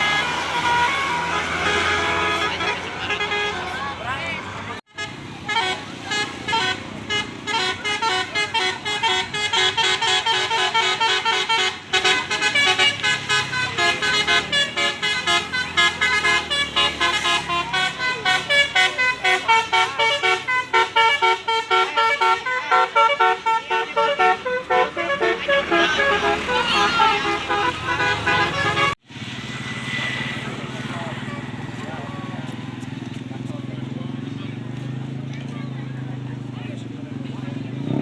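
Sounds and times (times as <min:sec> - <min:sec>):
musical bus horn tune: 0:00.0 - 0:04.1, 0:04.8 - 0:29.0.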